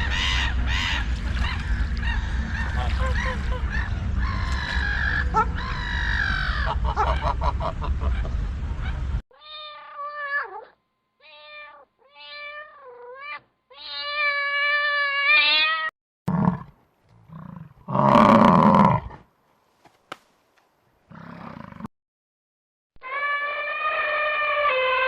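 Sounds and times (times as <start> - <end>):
rough noisy animal call: 0.0 - 9.0, 23.0 - 25.0
cat meowing: 9.3 - 15.9.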